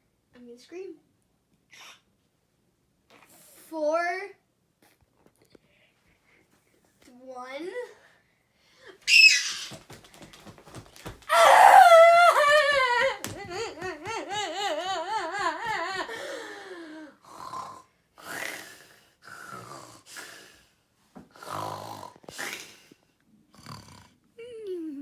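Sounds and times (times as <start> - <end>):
person screaming: 11.3 - 15.4
gasping breaths: 15.6 - 23.0.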